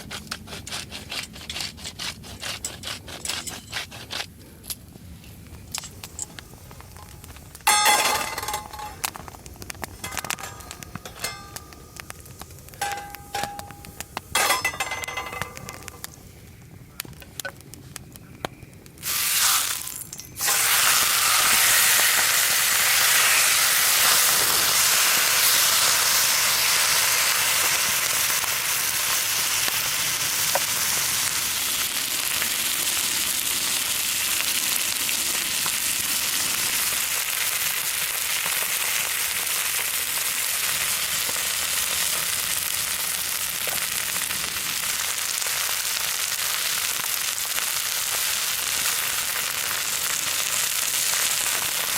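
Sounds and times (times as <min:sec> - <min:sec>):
chicken sizzling in hot fat: 0:18.9 - 0:51.9.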